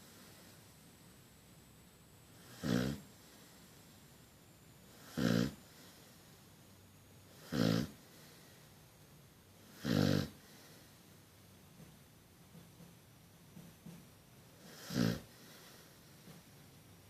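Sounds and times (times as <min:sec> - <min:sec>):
dog snoring: 0:02.4 - 0:03.6, 0:04.9 - 0:06.2, 0:07.3 - 0:08.5, 0:09.6 - 0:11.0, 0:14.6 - 0:16.0.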